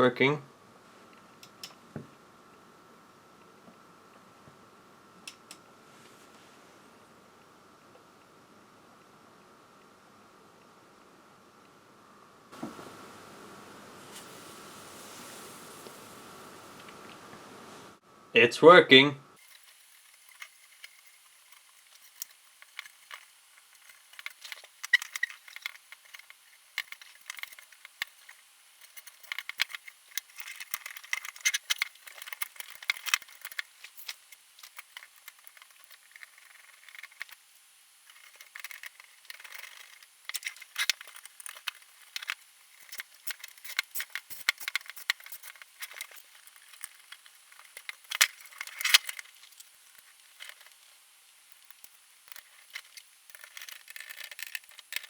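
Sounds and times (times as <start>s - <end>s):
small metallic clicks and rattles: 19.4s - 37.4s, 38.0s - 55.0s.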